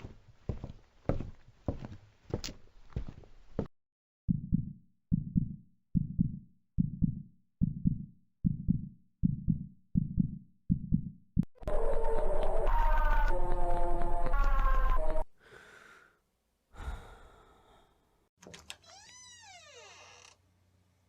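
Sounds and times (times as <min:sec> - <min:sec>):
heartbeat thumps: 0:04.3 - 0:11.5.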